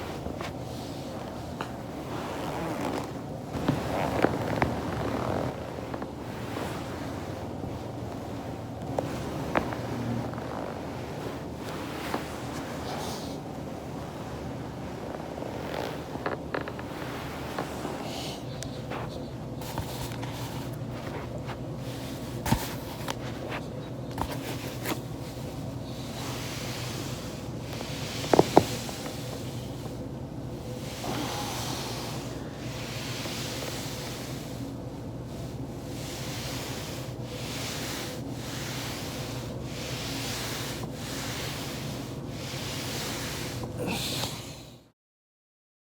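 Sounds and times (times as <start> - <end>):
back rolling on foam roller: 0.0 - 44.2
steady low hum: 0.0 - 44.9.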